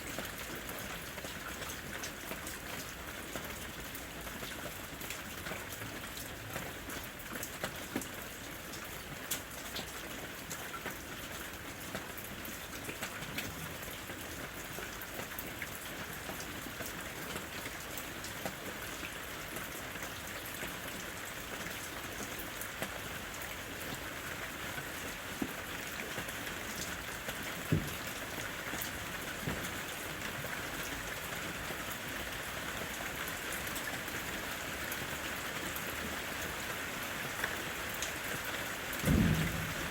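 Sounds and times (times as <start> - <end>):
steady rain in forest: 0.0 - 39.9
raindrops hitting: 23.8 - 32.0, 37.2 - 39.9.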